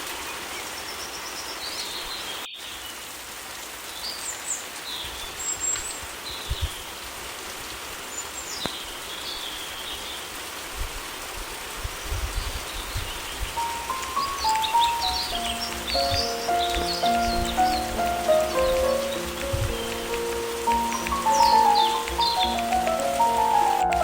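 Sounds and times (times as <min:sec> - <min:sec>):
rain hiss: 0:00.0 - 0:24.0
bird chirps: 0:13.6 - 0:23.9
soft low thumps: 0:15.0 - 0:22.9.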